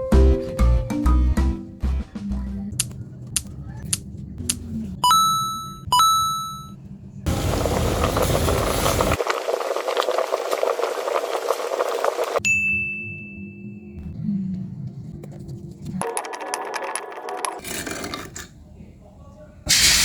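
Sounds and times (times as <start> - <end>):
ding sound effects: 5.1 - 6.8, 12.4 - 14.1
food sizzling in a pan: 7.3 - 12.4, 19.7 - 20.0.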